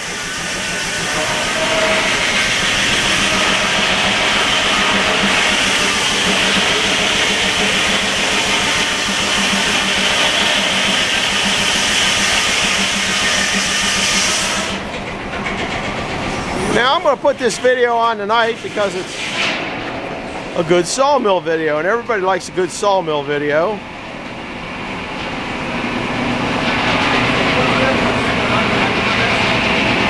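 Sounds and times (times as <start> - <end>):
circular saw cutting log: 0.0 - 14.9, 16.2 - 19.6.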